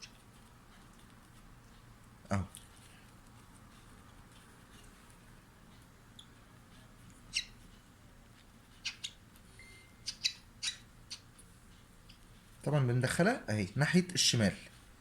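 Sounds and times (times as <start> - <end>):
bird chick squeaky begging calls: 7.3 - 7.6, 8.8 - 9.2, 10.0 - 11.3.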